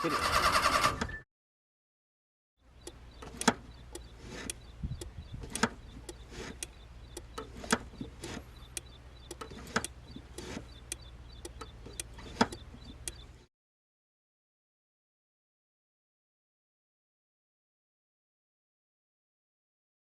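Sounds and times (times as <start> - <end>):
low steady rumble: 2.7 - 13.5
handling clicks and knocks: 2.8 - 13.3.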